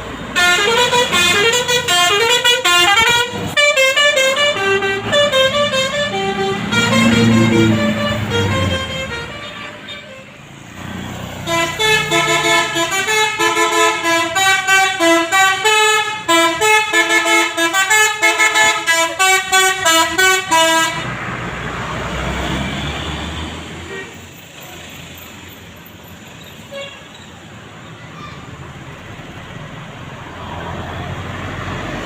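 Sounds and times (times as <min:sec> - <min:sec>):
low vehicle rumble: 0:00.0 - 0:13.0
musical bus horn tune: 0:00.3 - 0:10.5, 0:11.4 - 0:21.2, 0:26.7 - 0:27.1.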